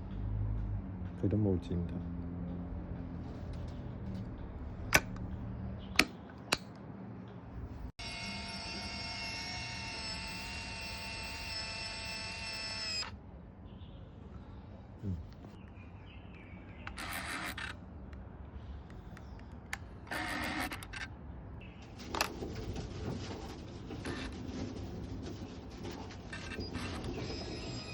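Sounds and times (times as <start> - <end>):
camera film advance whining: 8.0 - 13.1, 16.9 - 17.8, 20.1 - 21.0.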